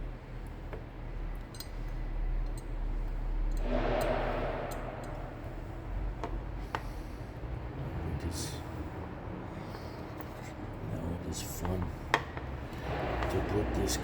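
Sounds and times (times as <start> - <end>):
low hum: 1.1 - 7.7.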